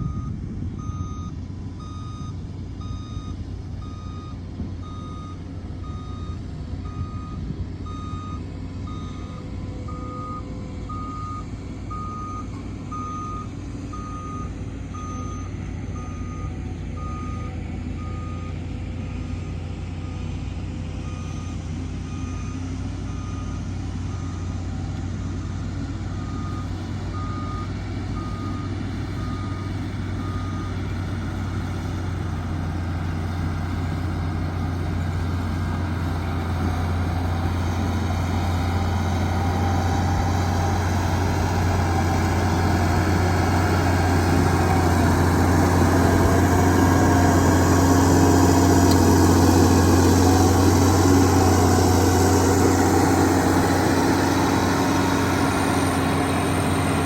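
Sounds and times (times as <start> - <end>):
reversing alarm beeping: 0.0 - 19.3, 26.2 - 30.7
diesel engine running: 0.0 - 57.0.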